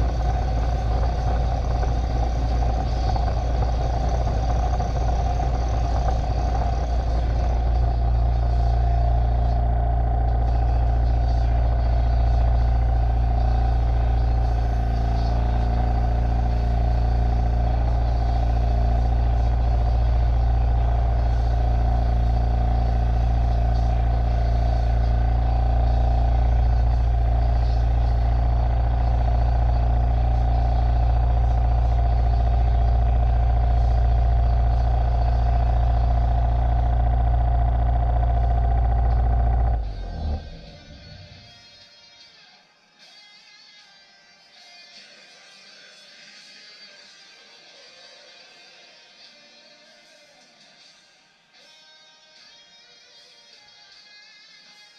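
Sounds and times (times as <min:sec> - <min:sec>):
loud machine drone: 0:00.0 - 0:41.5.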